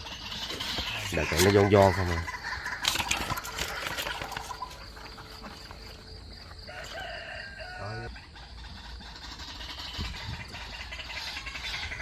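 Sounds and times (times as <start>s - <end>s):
rooster crowing: 6.6s - 8.2s.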